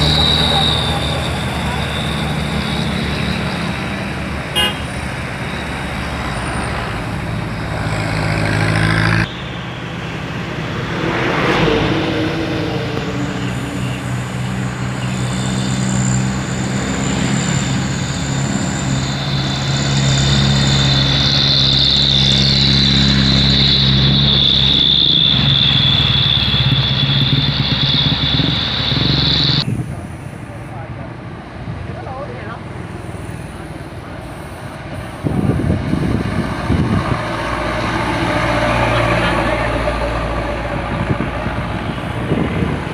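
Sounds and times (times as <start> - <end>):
high whine: 0.0 - 30.8
truck engines passing: 0.0 - 42.9.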